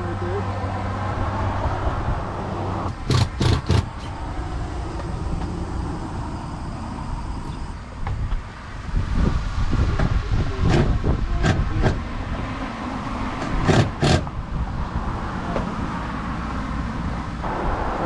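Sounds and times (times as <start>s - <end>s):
highway traffic rumble: 0.0s - 18.0s
sharp knocks: 13.4s - 14.3s.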